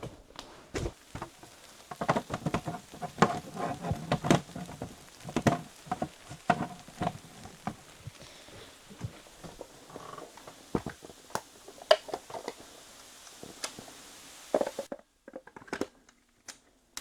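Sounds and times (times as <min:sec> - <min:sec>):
irregular taps and knocks: 0:00.8 - 0:12.6.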